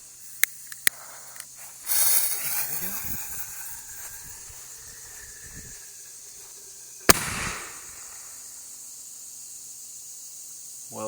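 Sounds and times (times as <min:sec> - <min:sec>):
firework mortar bang: 0:01.9 - 0:08.6.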